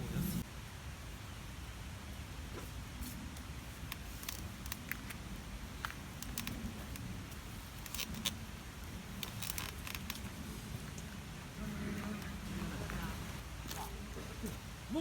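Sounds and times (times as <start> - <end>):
sharp clicks and crackles: 3.8 - 5.2, 5.8 - 10.4.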